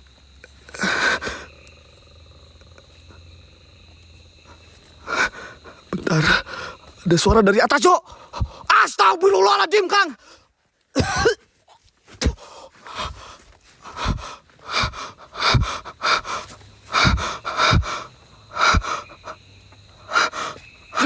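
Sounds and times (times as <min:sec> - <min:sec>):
man panting: 0:04.5 - 0:06.9, 0:08.1 - 0:08.7, 0:12.2 - 0:19.4, 0:20.0 - 0:21.0
breath buffeting microphone: 0:12.2 - 0:21.0.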